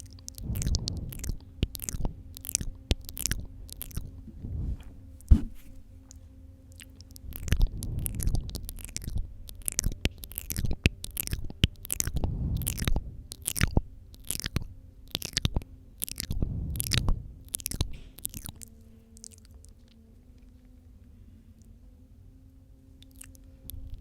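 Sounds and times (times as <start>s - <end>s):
wet mouth clicks and smacks: 0.0s - 4.2s, 6.7s - 20.0s, 23.0s - 24.0s
muffled low rumbles: 0.0s - 19.8s.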